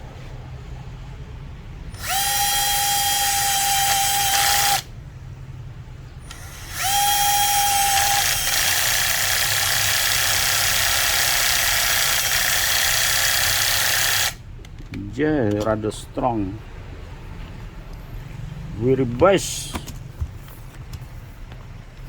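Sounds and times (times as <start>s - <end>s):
electric screwdriver motor whining: 1.9s - 4.9s, 6.3s - 14.4s.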